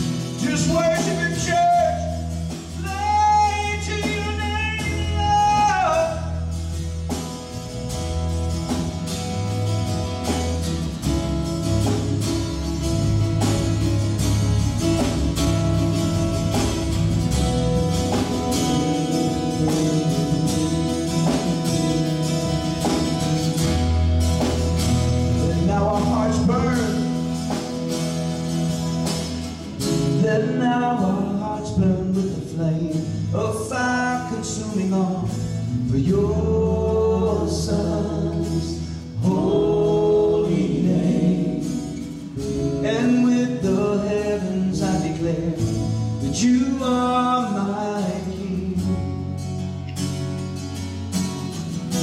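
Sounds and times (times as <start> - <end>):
bass line: 0.0 - 52.0
guitar chords: 0.0 - 52.0
steady beat: 8.5 - 29.6.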